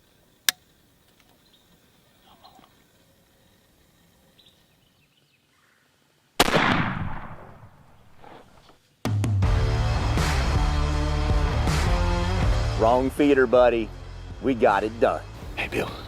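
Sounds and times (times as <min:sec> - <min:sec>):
gunshot: 0:06.4 - 0:08.0
music: 0:09.0 - 0:16.0.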